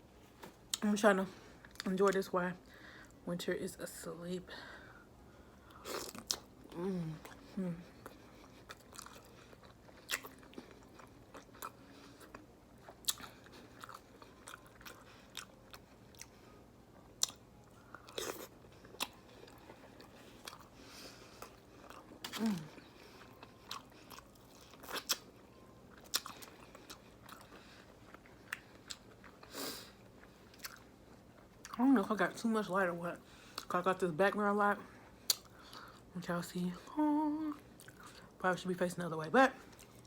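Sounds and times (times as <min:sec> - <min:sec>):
chewing: 0:07.2 - 0:16.6, 0:17.2 - 0:29.5, 0:30.1 - 0:31.8.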